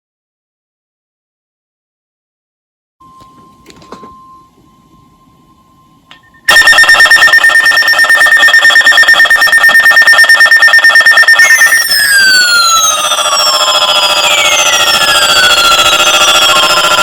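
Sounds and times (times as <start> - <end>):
faint steady beep: 3.0 - 17.0
pulsing high alert tones: 6.4 - 17.0.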